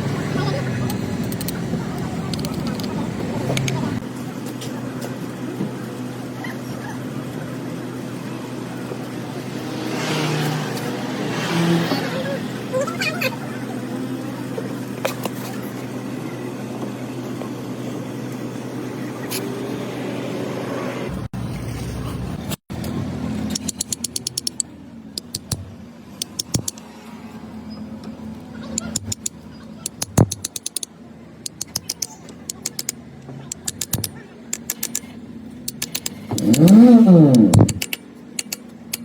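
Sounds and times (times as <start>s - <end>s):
engine-like hum: 0.0s - 39.0s
quick sharp clicks: 23.5s - 25.6s, 28.8s - 39.0s.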